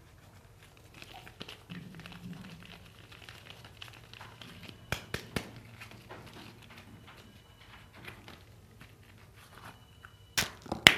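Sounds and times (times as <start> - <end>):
soap wrapper rustling: 0.5 - 6.9.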